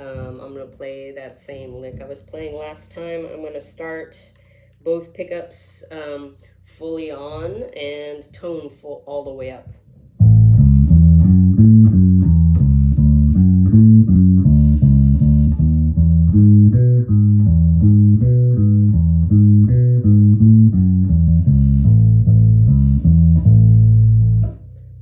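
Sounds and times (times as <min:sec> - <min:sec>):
bass guitar plucked riff: 0:10.2 - 0:25.0.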